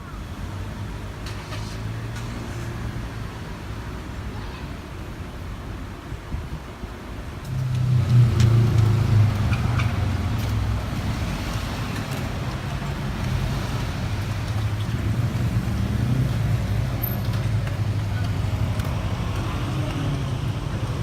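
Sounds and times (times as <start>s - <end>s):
vehicle engine rumble: 4.9s - 21.0s.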